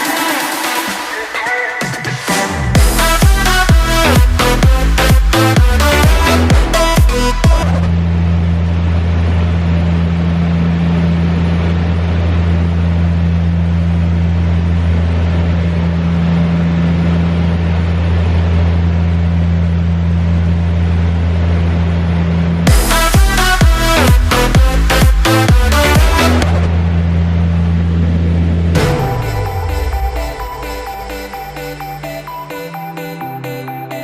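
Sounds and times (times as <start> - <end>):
engine droning with hiss: 7.8 - 23.6, 24.8 - 33.8.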